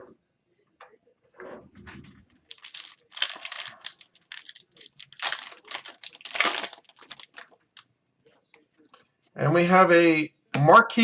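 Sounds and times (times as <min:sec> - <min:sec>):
foil wrappers tearing and crinkling: 0:02.5 - 0:07.5.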